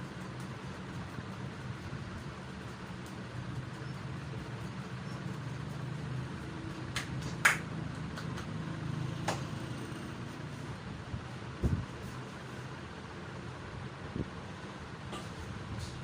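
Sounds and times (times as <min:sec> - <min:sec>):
steady low background hum: 0:00.0 - 0:16.0
hands slapping during massage: 0:06.7 - 0:08.6, 0:09.2 - 0:09.5.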